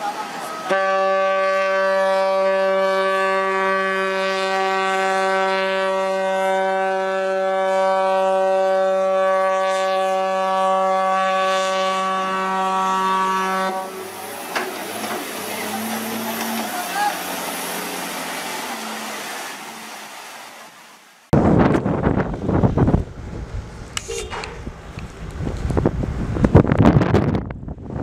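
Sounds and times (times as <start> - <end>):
ship's horn blast: 0.1 - 20.3.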